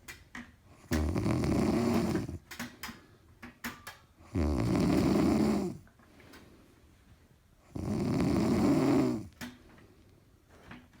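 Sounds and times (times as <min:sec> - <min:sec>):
person snoring loudly: 0:00.9 - 0:02.4, 0:04.3 - 0:05.8, 0:07.7 - 0:09.3.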